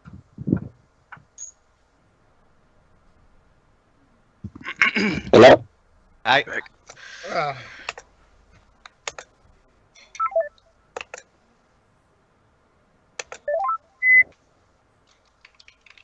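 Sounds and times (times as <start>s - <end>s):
sharp clicks: 8.8s - 9.3s, 11.0s - 11.3s, 13.2s - 13.5s
notification beeps: 10.2s - 10.6s, 13.5s - 14.3s.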